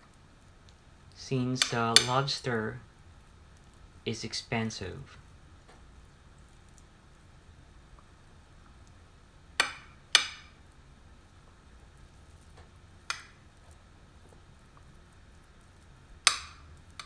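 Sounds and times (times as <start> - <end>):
utensil clinking against a dish: 1.6 - 2.3, 9.6 - 10.6, 16.3 - 17.0.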